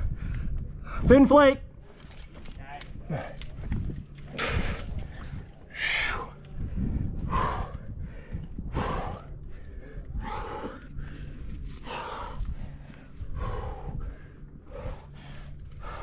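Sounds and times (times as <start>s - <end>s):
person breathing hard: 4.2s - 16.0s.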